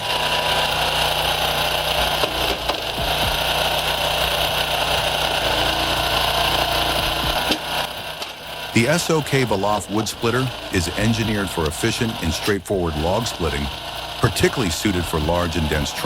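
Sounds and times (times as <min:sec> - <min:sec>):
engine running: 0:00.0 - 0:16.0.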